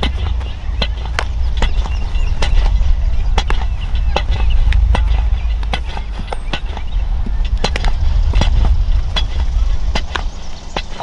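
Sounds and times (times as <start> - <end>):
balls smacking into gloves: 0.0 - 11.0
wind rumble on microphone: 0.0 - 11.0.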